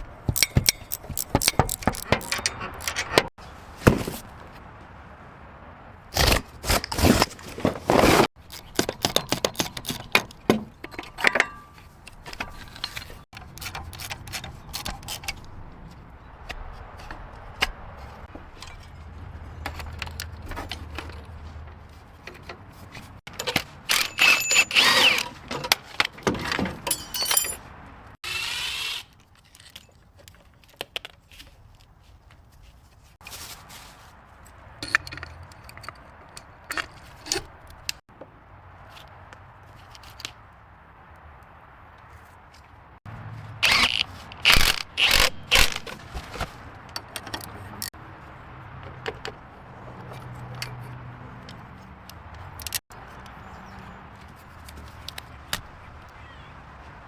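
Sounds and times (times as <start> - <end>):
hand tools clinking and scraping: 0.3 - 3.3, 6.6 - 27.7, 29.1 - 31.5, 33.0 - 38.0, 48.8 - 53.2.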